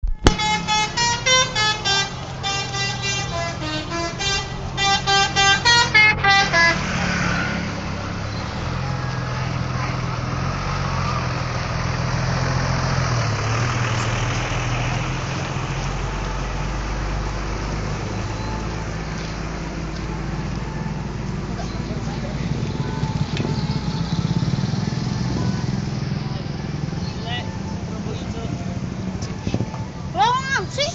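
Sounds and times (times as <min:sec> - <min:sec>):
musical bus horn: 0:00.0 - 0:11.2
bus engine rumbling: 0:00.0 - 0:30.9.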